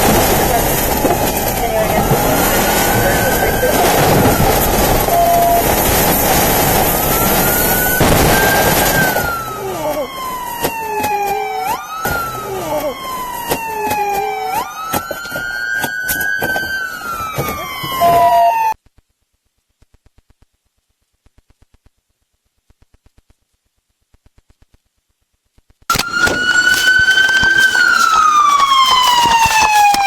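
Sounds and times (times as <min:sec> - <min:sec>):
road and engine rush: 0:00.0 - 0:10.6, 0:25.9 - 0:30.0
police siren wailing: 0:00.0 - 0:18.8, 0:25.9 - 0:30.0.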